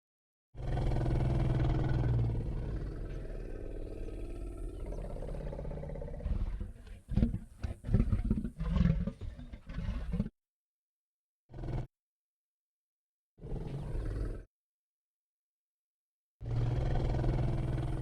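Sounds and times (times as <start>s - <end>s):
dinosaur growl: 0.6s - 10.3s, 13.4s - 14.5s, 16.4s - 18.0s.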